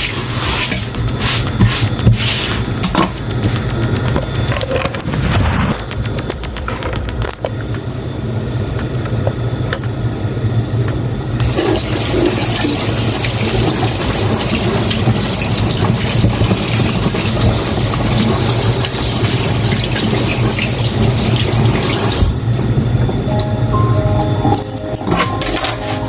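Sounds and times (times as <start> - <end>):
liquid pouring: 11.4 - 22.4.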